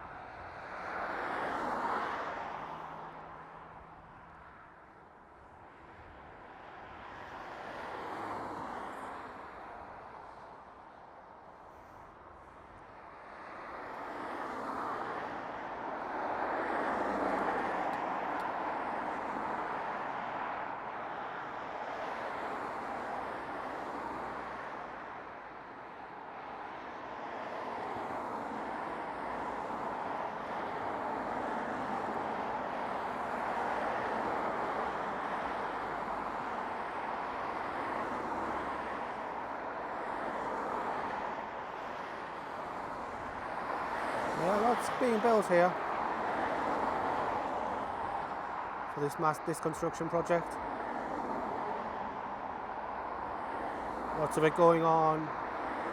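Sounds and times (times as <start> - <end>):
road traffic passing: 11.8 - 55.9.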